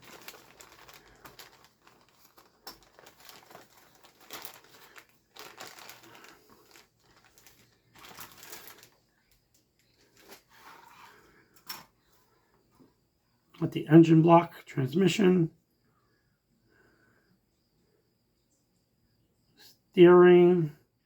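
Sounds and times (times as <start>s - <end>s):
plastic packaging crinkling: 0.0s - 10.9s.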